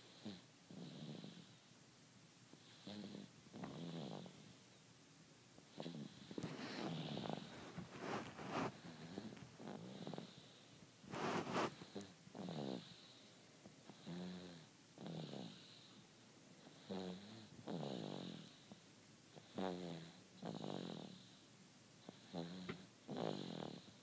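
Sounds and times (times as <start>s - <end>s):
rattling snoring: 5.8s - 7.5s.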